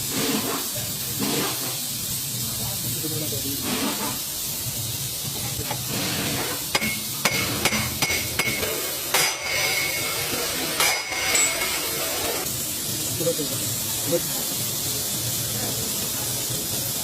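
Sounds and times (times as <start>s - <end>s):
steady hiss: 0.0s - 17.0s
hammer striking metal: 6.7s - 12.0s.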